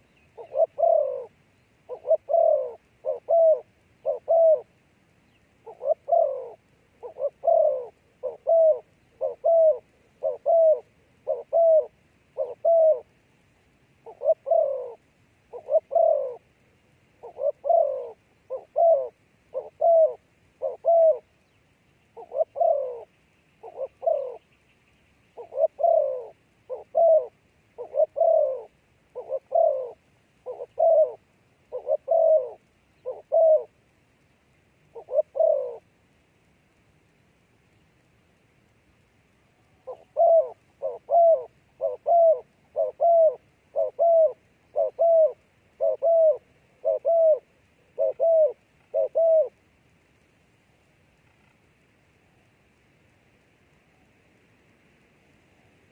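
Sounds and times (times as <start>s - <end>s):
dove cooing: 0.0s - 13.2s, 14.0s - 24.6s, 25.3s - 33.8s, 34.8s - 35.9s, 39.7s - 49.6s.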